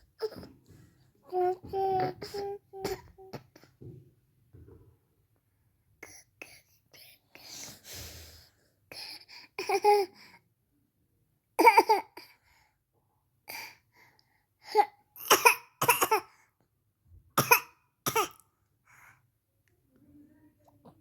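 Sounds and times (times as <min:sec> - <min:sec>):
baby coughing: 0:02.2 - 0:03.6, 0:11.6 - 0:12.3, 0:15.2 - 0:16.3, 0:17.4 - 0:18.4.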